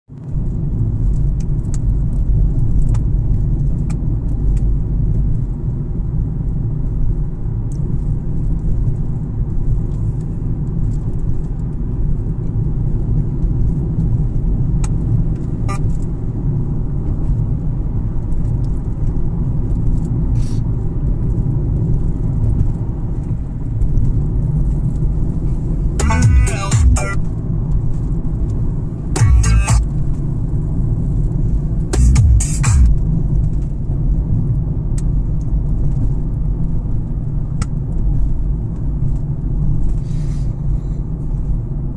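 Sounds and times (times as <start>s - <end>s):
car engine rumble inside cabin: 0.1s - 41.9s
pitched voice-like sound: 26.0s - 27.2s, 29.2s - 29.8s.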